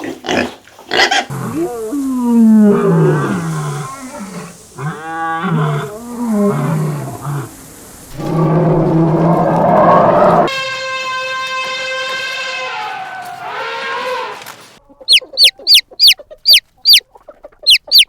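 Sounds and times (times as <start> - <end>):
animal calling: 15.0 - 17.0, 17.6 - 18.0.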